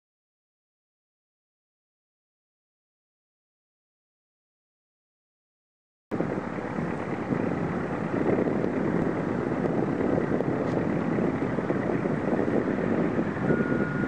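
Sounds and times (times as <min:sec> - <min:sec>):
wind buffeting microphone: 0:06.1 - 0:14.0.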